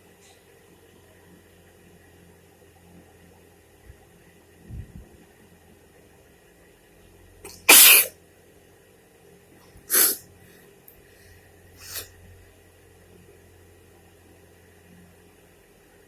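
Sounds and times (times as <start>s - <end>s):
woman sneezing: 7.5s - 8.1s, 9.9s - 10.2s.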